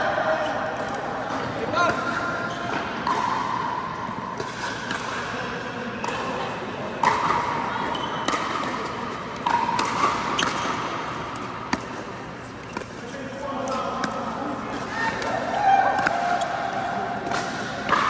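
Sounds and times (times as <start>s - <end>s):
ball bouncing on court: 7.0s - 13.0s.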